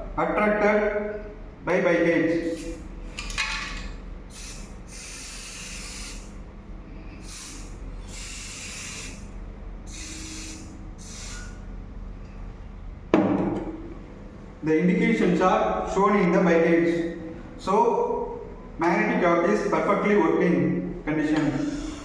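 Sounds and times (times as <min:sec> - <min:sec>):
steady low hum: 0:00.0 - 0:22.0
aerosol can spraying: 0:04.3 - 0:06.4, 0:07.2 - 0:09.3, 0:09.9 - 0:11.6.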